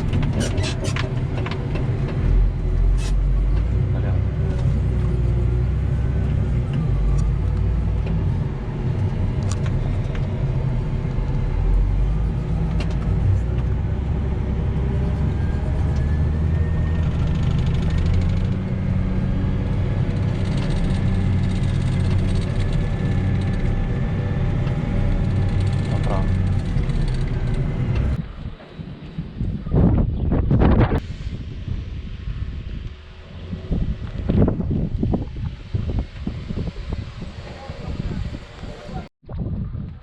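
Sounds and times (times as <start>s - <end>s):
farm machine engine running: 0.0s - 29.0s
faint rising whine: 1.2s - 39.1s.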